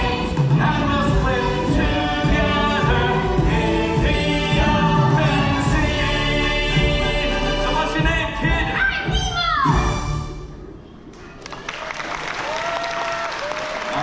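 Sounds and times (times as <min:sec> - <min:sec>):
group of voices singing: 0:00.0 - 0:08.8.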